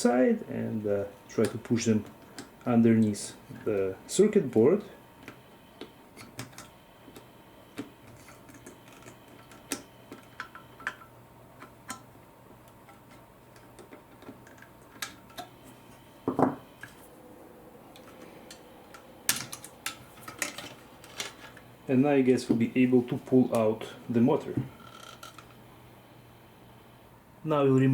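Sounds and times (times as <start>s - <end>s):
plastic parts clicking: 18.0s - 21.6s.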